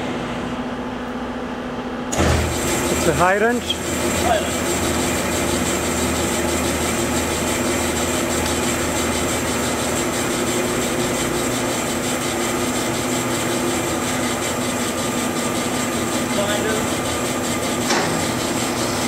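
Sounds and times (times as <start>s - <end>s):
band saw running: 2.2s - 19.0s.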